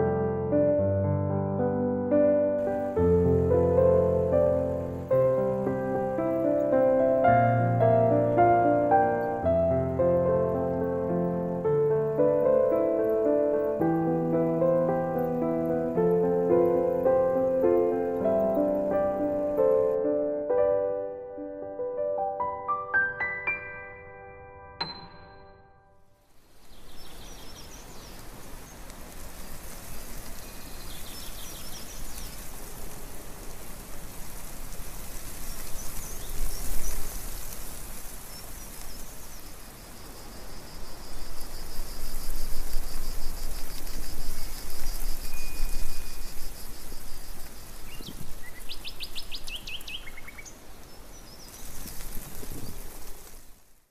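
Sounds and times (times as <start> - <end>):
steady rushing hiss: 2.2 - 20.4, 26.2 - 53.9
high bird trill: 45.2 - 46.6.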